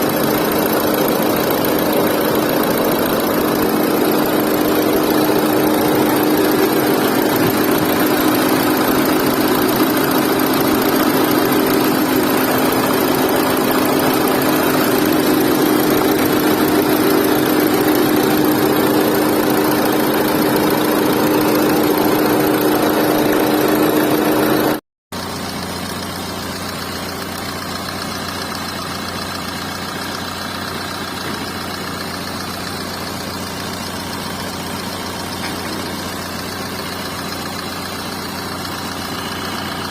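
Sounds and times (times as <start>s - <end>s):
diesel engine idling: 0.0s - 39.9s.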